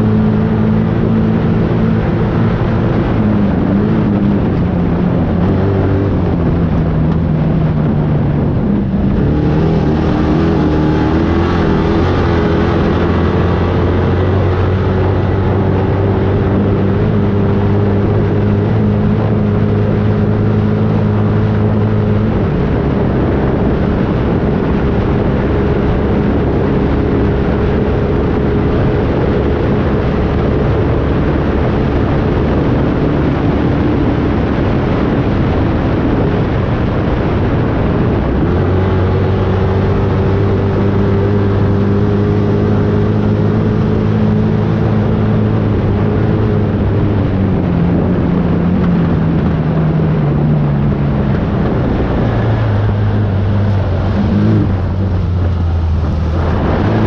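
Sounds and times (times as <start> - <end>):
engine running: 0.0 - 57.0
loud rushing noise: 1.4 - 16.9, 47.5 - 57.0.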